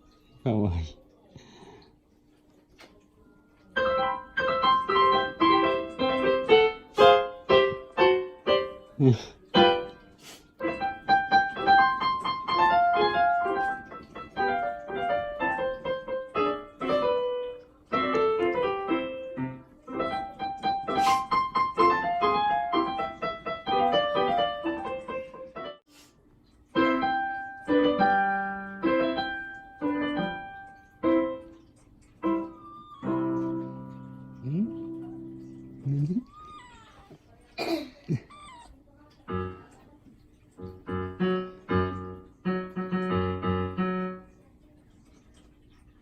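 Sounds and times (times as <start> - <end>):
piano music: 3.5 - 25.9, 26.7 - 36.3, 40.6 - 44.4.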